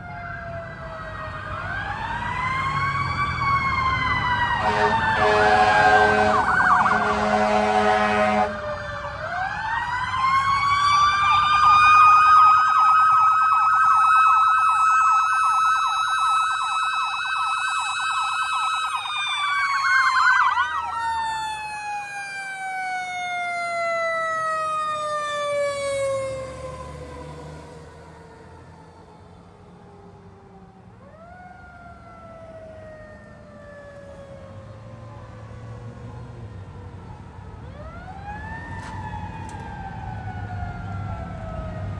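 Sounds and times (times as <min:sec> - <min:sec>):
electronic siren: 0:00.0 - 0:09.5, 0:10.2 - 0:27.4, 0:30.6 - 0:35.8
mechanical siren wailing: 0:00.0 - 0:27.9, 0:30.5 - 0:41.9
fire truck air horn: 0:04.5 - 0:08.8.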